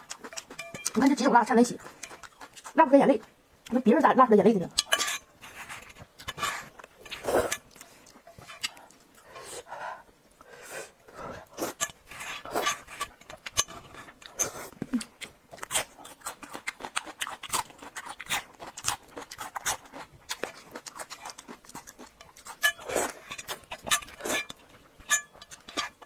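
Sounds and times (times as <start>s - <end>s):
wet chewing and lip smacks: 0.0s - 1.0s, 1.8s - 3.8s, 12.9s - 26.0s.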